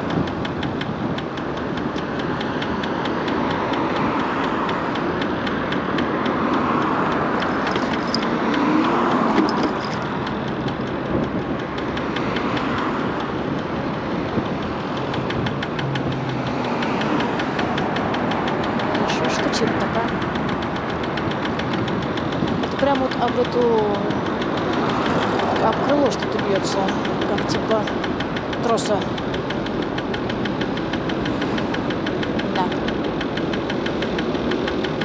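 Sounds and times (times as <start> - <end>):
cable ticking against fender: 0.0 - 35.0
wind and road noise: 0.0 - 35.0.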